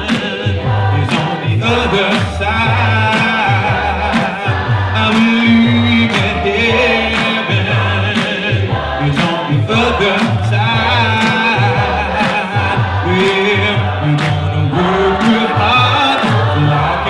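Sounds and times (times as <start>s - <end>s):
a cappella choir singing: 0.0s - 17.0s.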